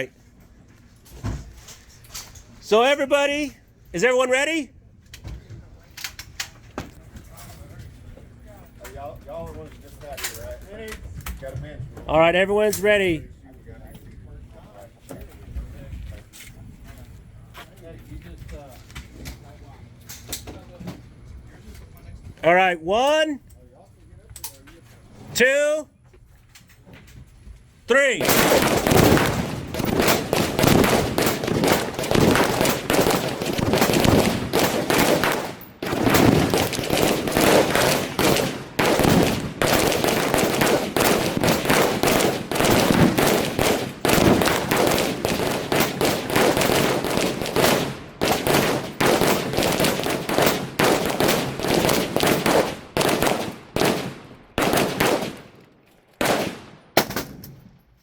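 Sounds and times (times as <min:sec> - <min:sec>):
rifles firing volley: 0:27.9 - 0:57.5
exploding targets: 0:28.1 - 0:55.6.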